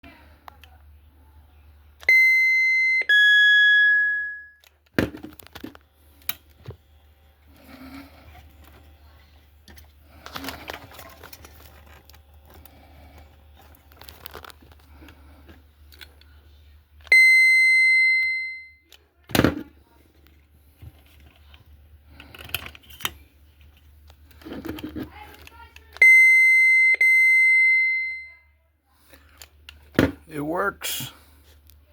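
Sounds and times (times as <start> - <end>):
electronic ping ringing down: 2.1 - 4.6
two-note doorbell ding-dong tone: 2.1 - 4.6.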